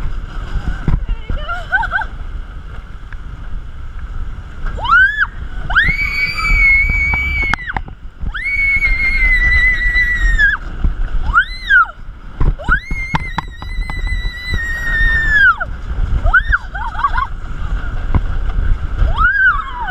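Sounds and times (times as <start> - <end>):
wind buffeting microphone: 0.0 - 19.9
riders screaming: 4.7 - 17.3, 19.0 - 19.9.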